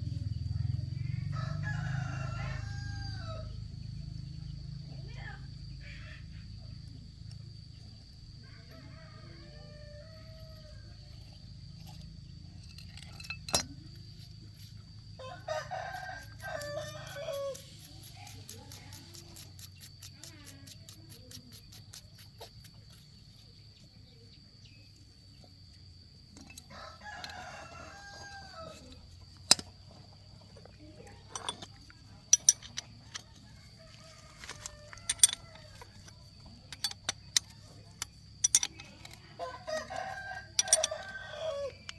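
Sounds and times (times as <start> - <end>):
low steady hum: 0.0 - 41.9
rooster crowing: 0.9 - 3.7, 8.4 - 11.1, 15.2 - 19.3, 26.6 - 29.0, 32.7 - 36.4, 38.9 - 41.9.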